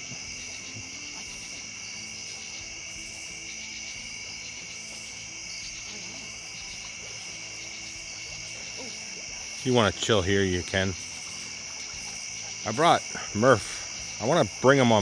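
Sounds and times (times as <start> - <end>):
night insects trilling: 0.0 - 15.0.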